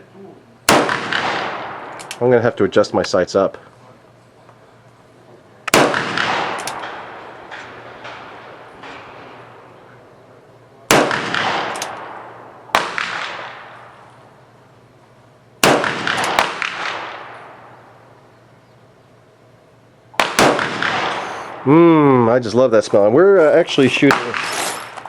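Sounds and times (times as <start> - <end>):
gunshots echoing: 0.6 - 2.4, 5.6 - 14.4, 15.6 - 18.2, 20.1 - 22.4, 23.8 - 25.0.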